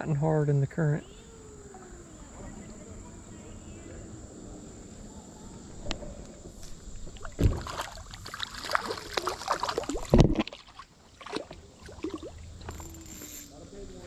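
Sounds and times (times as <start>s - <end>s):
stream water splashing: 6.6s - 13.0s.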